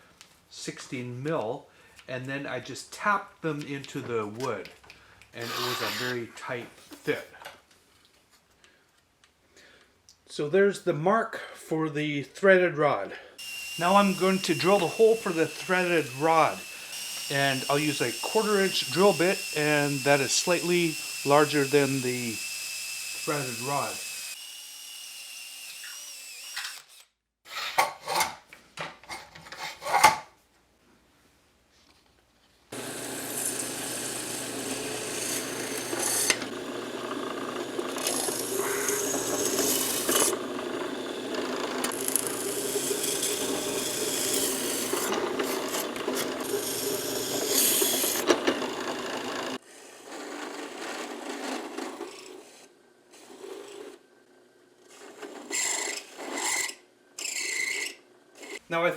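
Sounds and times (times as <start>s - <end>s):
electric drill boring into wood: 5.4s - 6.2s, 13.4s - 27.1s, 32.7s - 49.9s.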